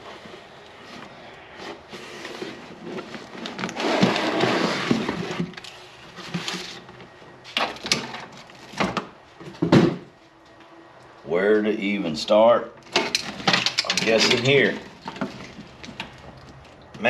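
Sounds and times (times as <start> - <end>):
sharp handling noises: 12.8 - 17.0.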